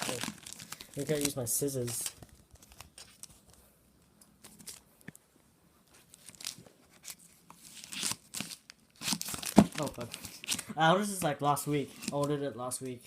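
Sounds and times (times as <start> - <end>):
cardboard and plastic rustling: 0.0 - 3.6, 5.9 - 12.4.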